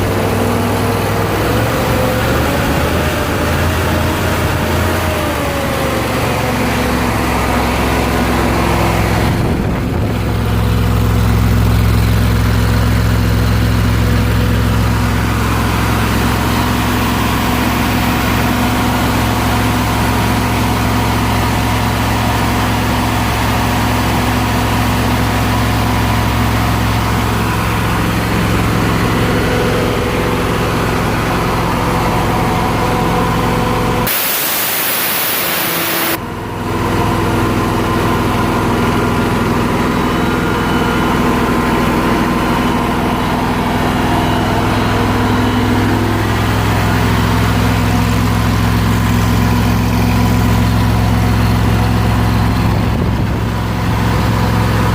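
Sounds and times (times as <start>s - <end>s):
compressor engine running: 0.0s - 54.9s
high hiss: 34.1s - 36.2s.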